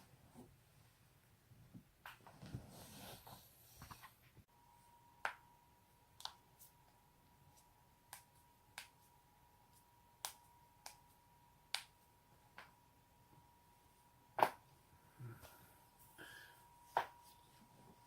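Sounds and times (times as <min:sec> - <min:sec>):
faint steady whine: 0:03.5 - 0:18.0.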